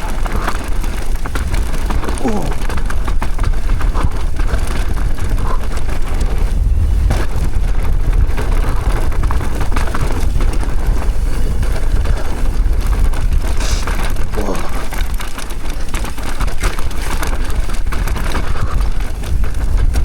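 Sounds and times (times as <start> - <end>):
bike clicks and rattles: 0.0 - 20.0
tyres on loose dirt: 0.0 - 20.0
wind buffeting microphone: 0.0 - 20.0.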